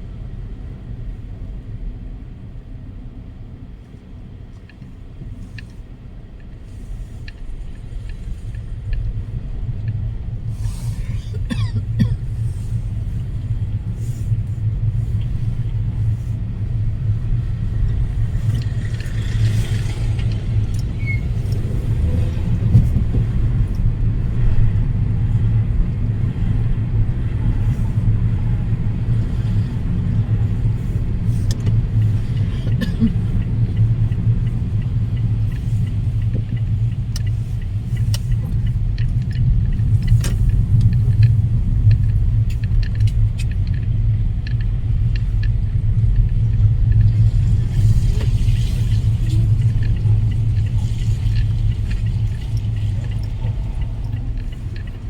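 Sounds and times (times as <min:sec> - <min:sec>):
wind buffeting microphone: 0:12.7 - 0:55.0.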